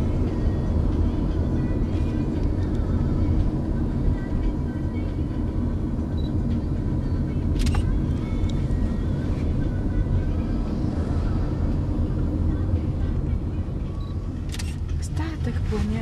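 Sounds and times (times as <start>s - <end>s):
car cabin road rumble: 0.0s - 16.0s
sharp click: 7.6s - 7.9s, 14.5s - 14.8s.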